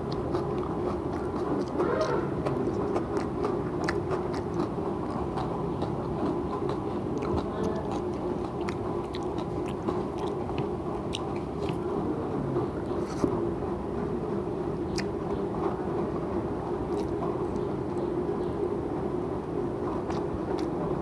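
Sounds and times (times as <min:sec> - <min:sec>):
mouth clicks and smacks: 0:00.0 - 0:12.1, 0:14.9 - 0:15.7, 0:16.9 - 0:18.1, 0:19.9 - 0:21.0
person chewing food: 0:00.0 - 0:12.1, 0:14.9 - 0:15.4, 0:16.8 - 0:18.1, 0:19.9 - 0:21.0
low background hum: 0:00.0 - 0:21.0.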